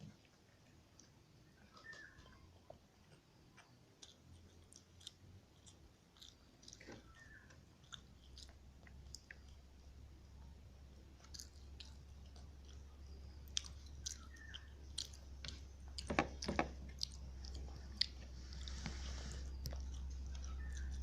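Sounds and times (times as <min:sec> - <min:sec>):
close chewing of food: 0:00.0 - 0:21.0
steady low hum: 0:02.4 - 0:21.0
mouth clicks and snaps: 0:13.5 - 0:18.9.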